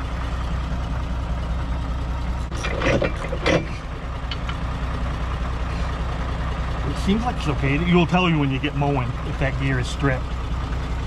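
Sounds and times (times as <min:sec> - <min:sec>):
tractor engine idling: 0:00.0 - 0:11.0
short metal clanks: 0:02.5 - 0:04.6.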